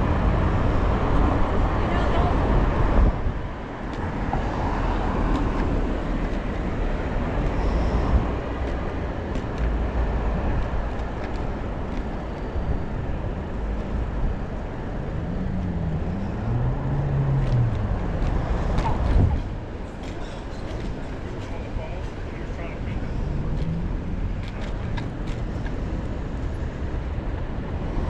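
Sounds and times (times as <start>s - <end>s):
wind on microphone: 0.0s - 19.8s
passing vehicles rumbling: 0.0s - 28.0s.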